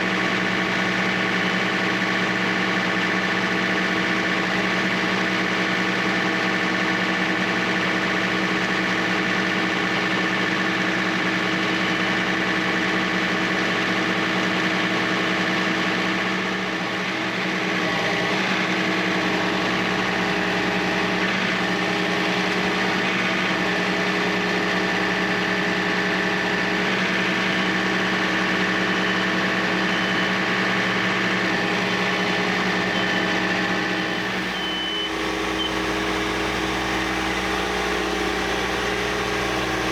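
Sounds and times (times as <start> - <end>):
sawmill engine running: 33.0 - 39.9.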